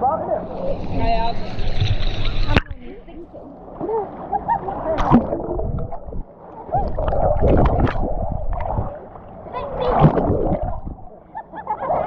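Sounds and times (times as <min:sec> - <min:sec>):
water rushing and splashing: 0:00.4 - 0:11.2.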